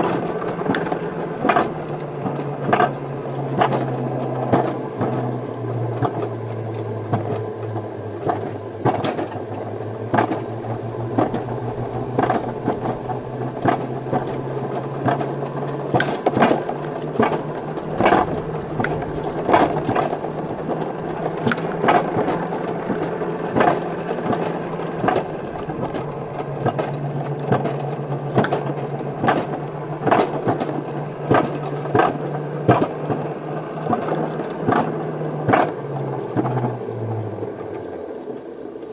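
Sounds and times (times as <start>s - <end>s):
coaster sled humming on rails: 0.0s - 38.9s
wheels clicking over rail joints: 0.0s - 38.9s.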